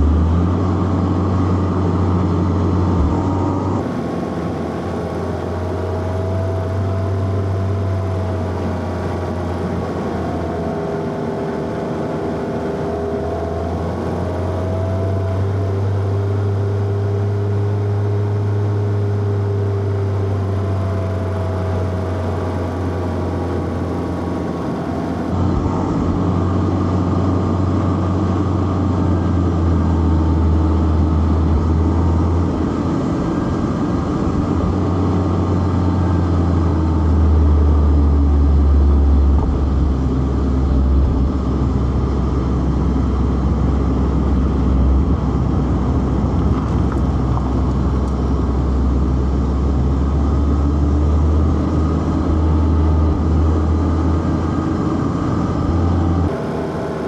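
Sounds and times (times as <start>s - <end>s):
car engine running hard: 0.0s - 57.0s
tyre and road noise: 29.2s - 57.0s.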